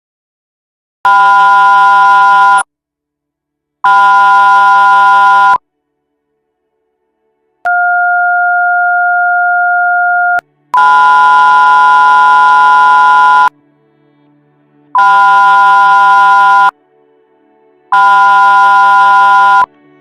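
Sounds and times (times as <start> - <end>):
chord of steady alarm tones: 9.9 - 13.5, 15.0 - 16.7, 18.0 - 19.7.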